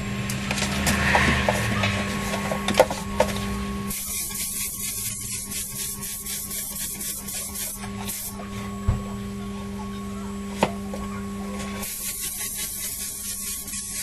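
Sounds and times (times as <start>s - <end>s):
steady hum: 0.0s - 14.0s
aerosol spray paint hissing: 3.9s - 8.4s, 11.8s - 14.0s.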